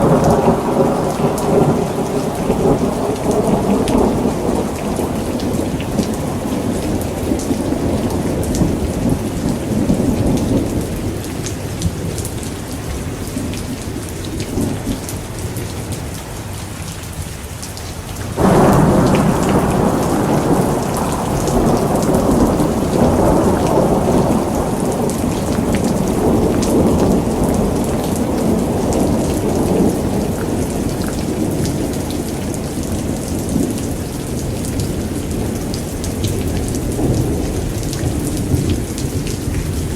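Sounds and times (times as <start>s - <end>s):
thunder rumbling: 0.0s - 15.2s, 18.3s - 39.9s
rain pattering: 0.0s - 39.9s
loud thunder crack: 18.4s - 32.6s.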